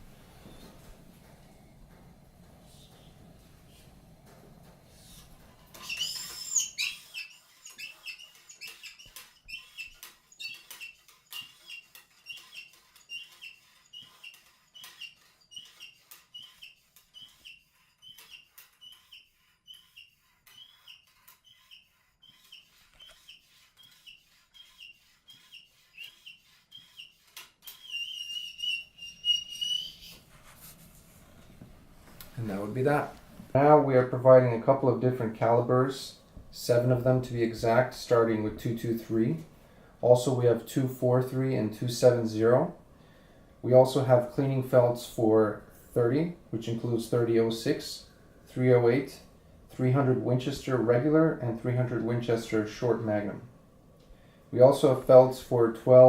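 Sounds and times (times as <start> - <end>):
cleaning rod scrape: 4.9 - 31.2
cleaning pad squeaking in barrel: 5.7 - 30.3.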